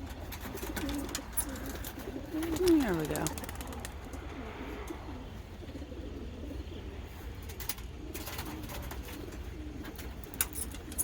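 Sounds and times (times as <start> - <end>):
pigeons cooing: 0.0 - 11.0.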